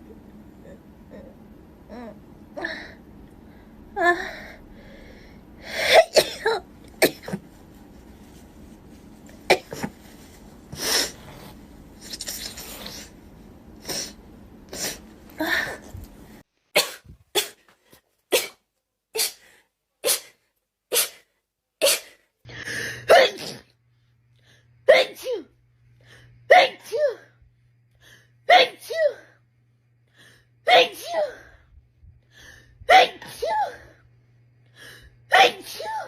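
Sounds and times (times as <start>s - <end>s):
woman sneezing: 20.0s - 22.2s, 23.1s - 23.7s, 24.9s - 25.5s, 26.5s - 27.3s, 30.7s - 31.5s, 32.9s - 33.9s, 35.3s - 36.0s.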